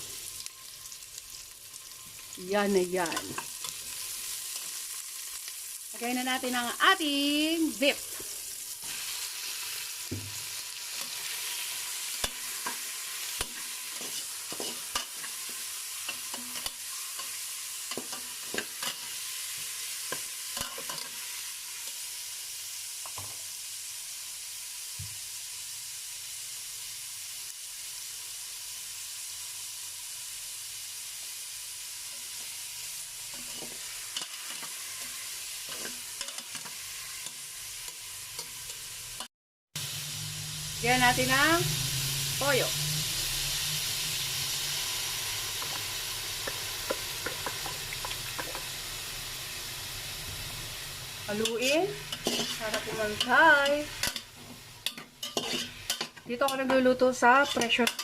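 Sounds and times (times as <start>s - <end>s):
meat sizzling in oil: 0.0s - 58.0s
utensil scraping a pot: 52.1s - 53.4s, 54.0s - 56.7s.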